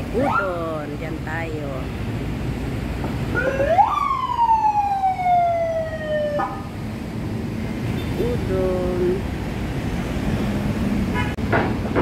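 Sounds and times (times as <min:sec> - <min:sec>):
street traffic noise: 0:00.0 - 0:12.0
siren whoop: 0:03.3 - 0:06.6.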